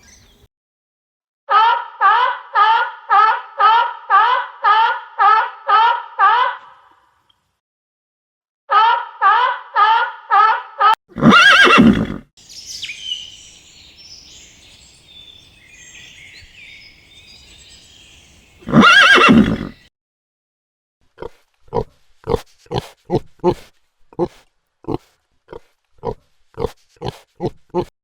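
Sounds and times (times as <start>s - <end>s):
horse whinnying: 11.1s - 12.2s, 18.6s - 19.9s
faint bird chirping: 12.4s - 19.9s.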